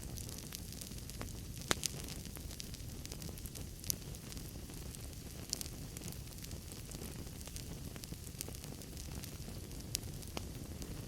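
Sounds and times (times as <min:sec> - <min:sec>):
fire flames rumbling: 0:00.0 - 0:11.0
logs crackling and popping: 0:00.0 - 0:11.0.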